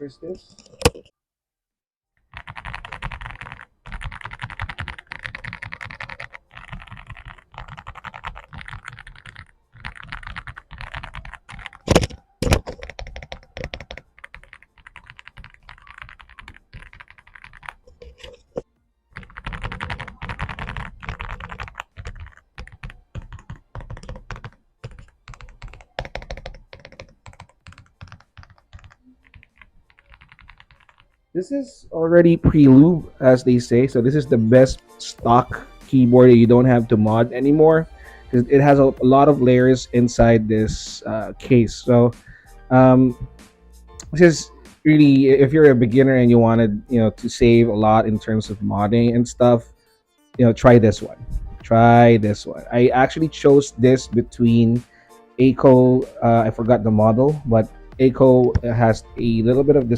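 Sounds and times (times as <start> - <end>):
typing on mechanical keyboard: 2.3 - 18.4, 19.2 - 31.1.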